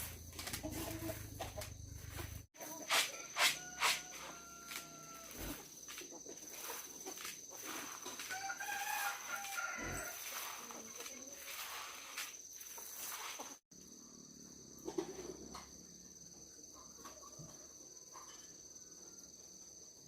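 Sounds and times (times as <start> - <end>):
rooster crowing: 3.0 - 5.6, 8.2 - 10.4.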